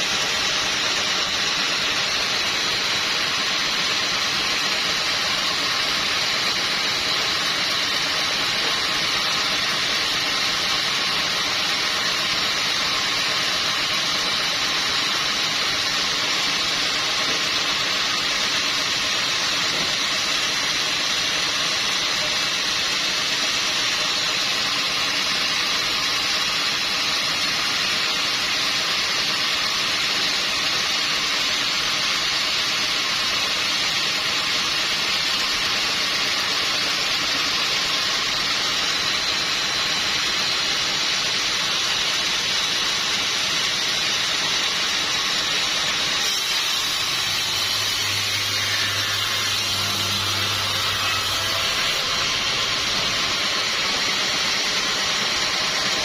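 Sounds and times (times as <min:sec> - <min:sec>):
sawmill saw running: 0:00.0 - 0:56.0.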